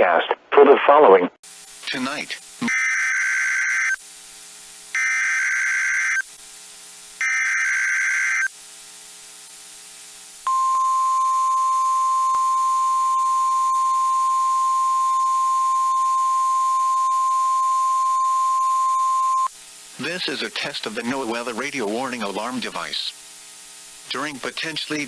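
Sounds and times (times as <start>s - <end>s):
harsh digital data bursts: 1.4s - 25.0s
warning alarm tone: 2.6s - 4.0s, 5.0s - 6.3s, 7.2s - 8.5s, 10.5s - 19.5s.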